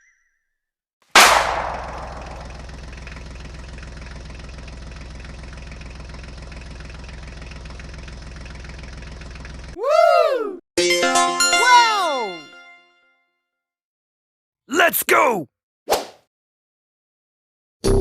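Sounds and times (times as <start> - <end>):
tractor engine starting and idling: 1.9 - 9.8.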